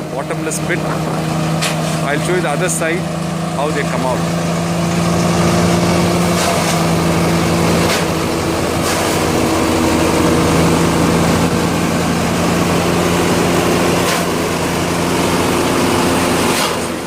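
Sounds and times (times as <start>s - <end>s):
chipper-shredder engine drone: 0.0s - 17.0s
grinding of palm fronds: 4.9s - 10.2s.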